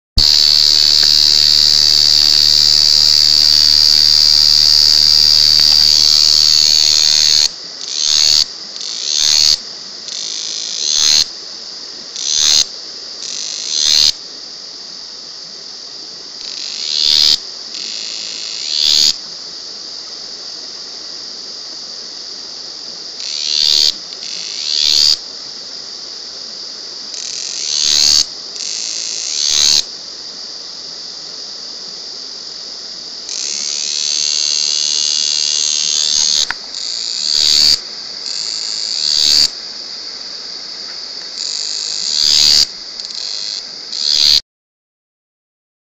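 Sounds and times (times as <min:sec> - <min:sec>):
cicada buzzing: 0:00.2 - 0:11.3, 0:12.2 - 0:14.2, 0:16.4 - 0:19.2, 0:23.1 - 0:25.4, 0:27.0 - 0:44.4.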